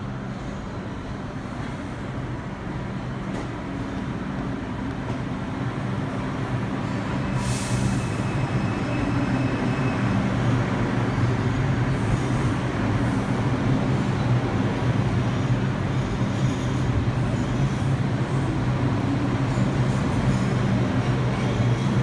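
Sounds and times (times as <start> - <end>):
subway train hum: 0.0 - 22.0
air release hiss: 7.4 - 8.2.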